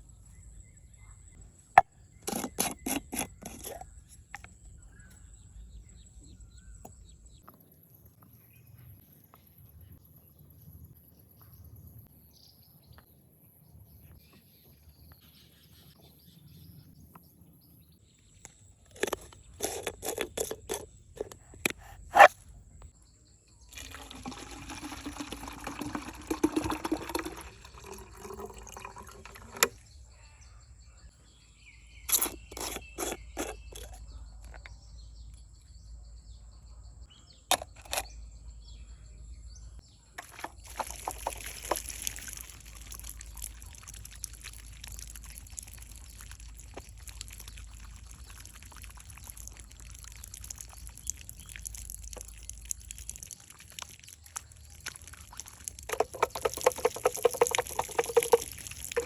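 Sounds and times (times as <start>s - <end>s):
water pouring and trickling: 23.7s - 30.0s, 40.2s - 59.0s
handling knocks and clicks: 55.8s - 59.0s.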